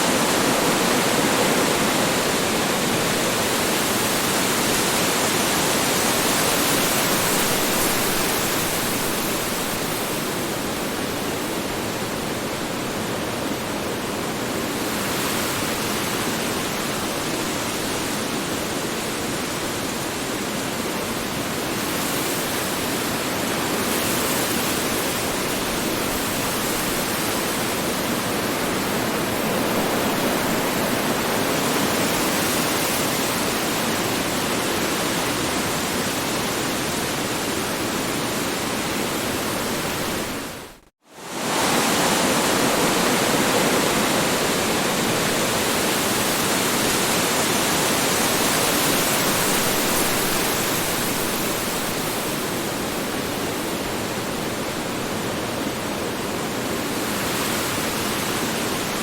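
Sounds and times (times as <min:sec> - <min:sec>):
strong wind blowing: 0:25.3 - 0:59.0.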